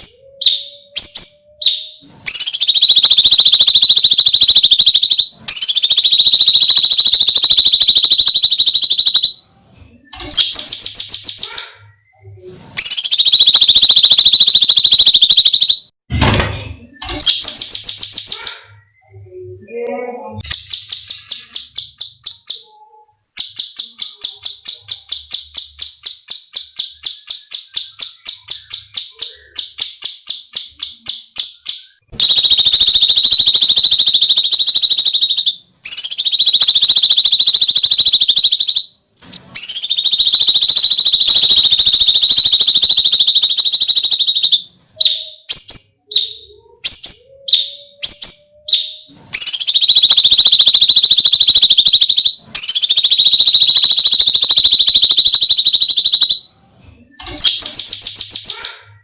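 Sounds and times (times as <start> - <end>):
songbird shrill screeching trill: 0.0 - 9.3, 47.0 - 56.4
songbird sharp repeated notes: 0.0 - 15.9, 20.4 - 59.0.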